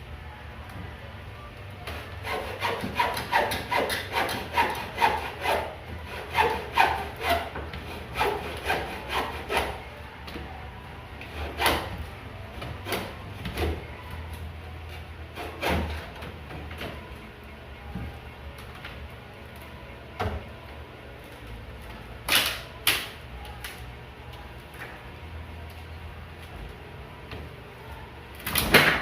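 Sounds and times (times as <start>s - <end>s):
rasping strokes on wood: 2.2s - 9.8s.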